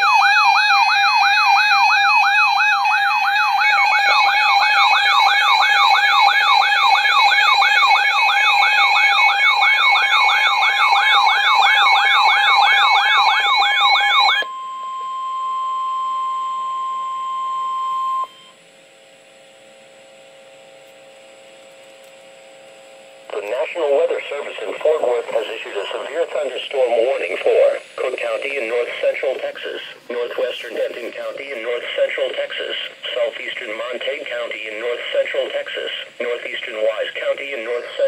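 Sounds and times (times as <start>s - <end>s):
siren yelping up and down: 0.0s - 14.5s
steady high tones: 23.3s - 38.0s.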